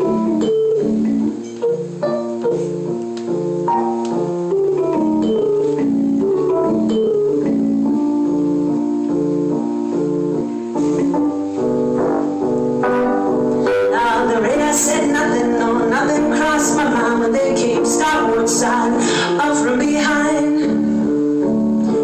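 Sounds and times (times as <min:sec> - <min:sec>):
electric keyboard chords: 0:00.0 - 0:22.0.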